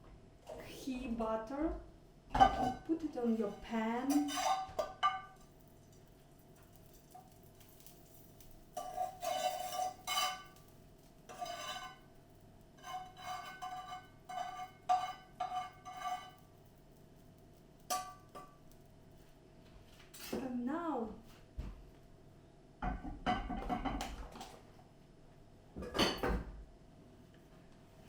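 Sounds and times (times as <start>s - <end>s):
spoon scraping a pan: 3.4s - 5.5s, 8.7s - 10.6s, 11.3s - 12.1s, 12.7s - 16.5s.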